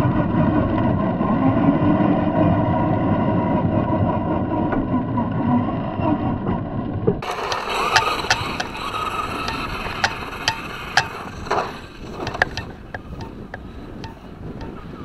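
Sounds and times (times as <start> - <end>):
toy truck running over gravel: 7.2 - 15.0.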